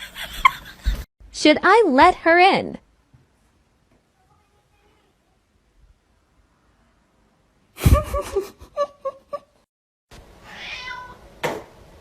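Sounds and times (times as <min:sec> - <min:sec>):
cat meowing: 0:10.4 - 0:11.2.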